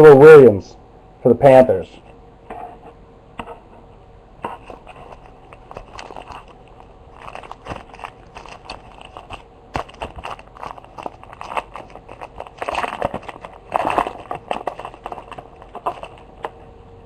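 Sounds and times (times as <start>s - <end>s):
cards being handled: 4.4s - 16.6s
wrapper crinkling and tearing: 4.6s - 16.5s.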